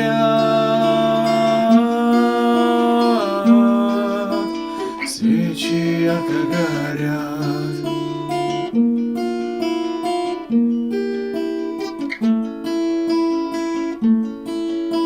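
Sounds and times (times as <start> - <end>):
person singing: 0.0 - 8.7
acoustic guitar chords: 0.0 - 15.0.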